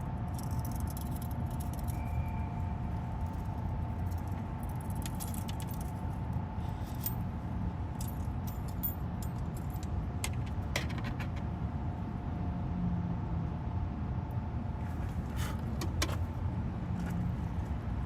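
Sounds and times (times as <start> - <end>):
steady low rumble: 0.0 - 10.2.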